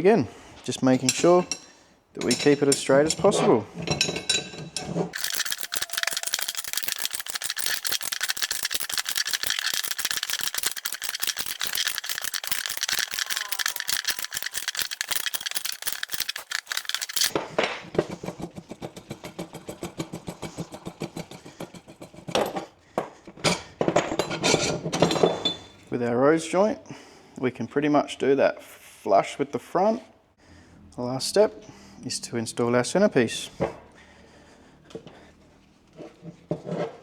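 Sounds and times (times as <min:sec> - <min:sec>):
spanner clicking on threaded screw: 0:05.2 - 0:17.3.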